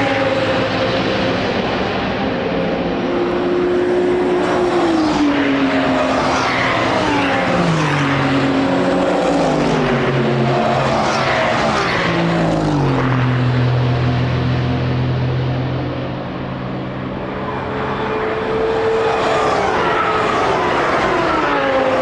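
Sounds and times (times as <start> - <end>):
racing car engines downshifting: 0.0 - 22.0.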